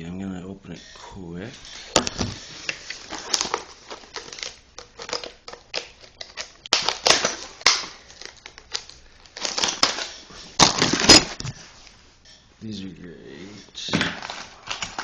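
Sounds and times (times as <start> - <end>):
packaging crinkling and rustling: 1.9 - 11.8, 13.8 - 15.0
packaging clicks and snaps: 14.0 - 15.0.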